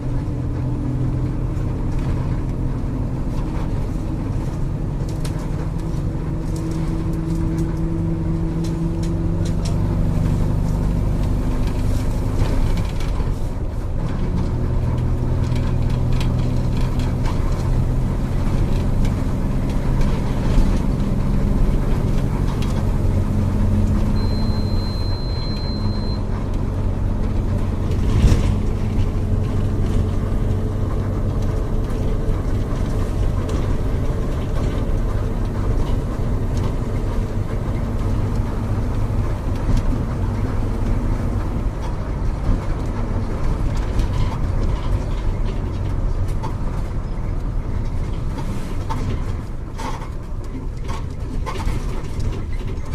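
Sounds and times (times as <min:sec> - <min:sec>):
bus diesel engine running: 0:00.0 - 0:52.9
short high beep: 0:24.2 - 0:26.2.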